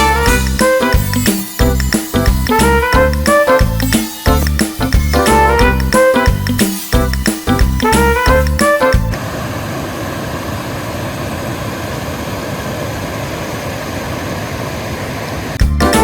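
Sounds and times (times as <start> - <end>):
background music: 0.0 - 9.2, 15.6 - 16.0.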